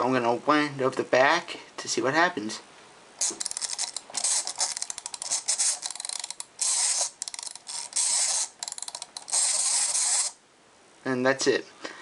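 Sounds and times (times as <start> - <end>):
steady rasp: 3.2 - 10.4
toy wind-up ratcheting clicks: 3.2 - 10.4.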